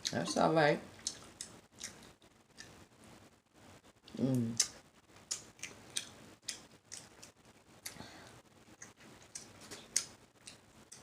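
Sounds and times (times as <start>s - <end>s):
mouth smacking and chewing: 0.9s - 2.8s, 4.6s - 8.0s, 8.8s - 11.0s.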